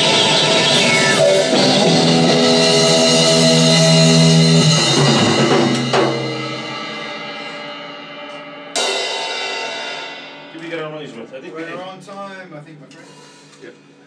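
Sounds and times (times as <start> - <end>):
electric guitar: 0.0 - 10.7
drum kit: 0.0 - 13.2.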